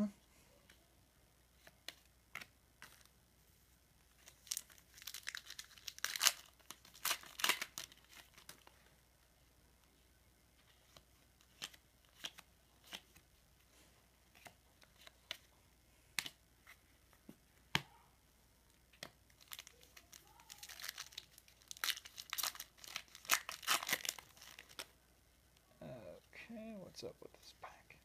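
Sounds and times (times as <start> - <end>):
foil wrapper crinkling and tearing: 4.2 - 8.7, 19.3 - 24.9.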